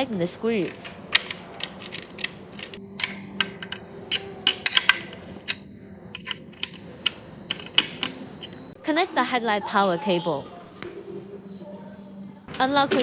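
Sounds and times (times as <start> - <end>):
hand tool clicking on screws: 0.0 - 8.7, 12.5 - 13.0.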